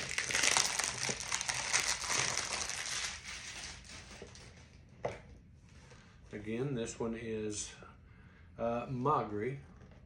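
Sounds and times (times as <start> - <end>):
paper packaging crinkling: 0.0 - 4.7.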